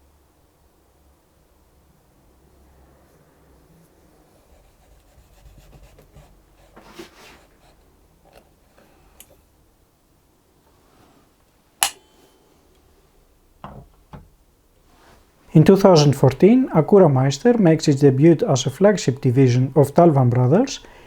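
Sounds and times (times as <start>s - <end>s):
soft rubbing and scraping: 3.0s - 8.0s, 10.6s - 11.4s, 14.8s - 15.5s
sharp click: 11.8s - 12.1s.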